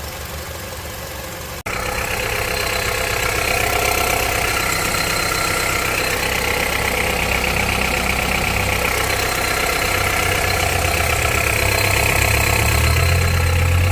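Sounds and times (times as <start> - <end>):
car engine idling with clatter: 0.0 - 13.9
low hum: 1.7 - 13.9.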